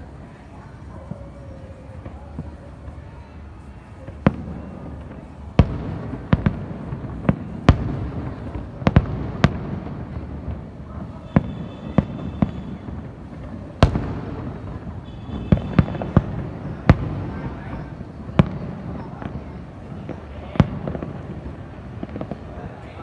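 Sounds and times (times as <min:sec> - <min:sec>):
rumble of distant fireworks: 0:00.0 - 0:23.0.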